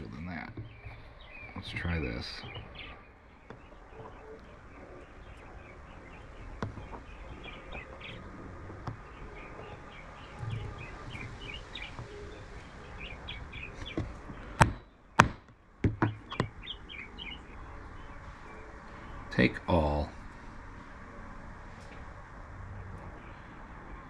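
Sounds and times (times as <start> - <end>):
birds chirping: 0.0 - 24.0.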